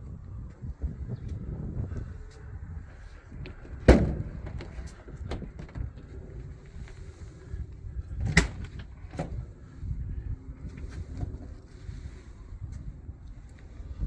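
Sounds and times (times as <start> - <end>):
steady low rumble: 0.0 - 14.0
loud knocks: 3.8 - 5.8.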